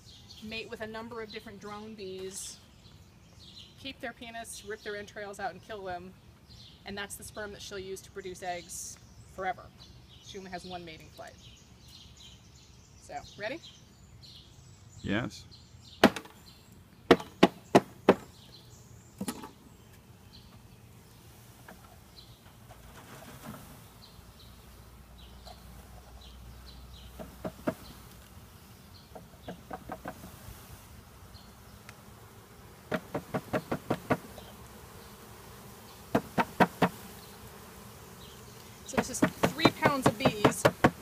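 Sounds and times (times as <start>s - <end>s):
bees buzzing faintly: 0.0s - 41.0s
bee package knocked sharp raps: 16.0s - 16.4s, 32.9s - 34.4s, 36.1s - 37.0s, 39.0s - 41.0s.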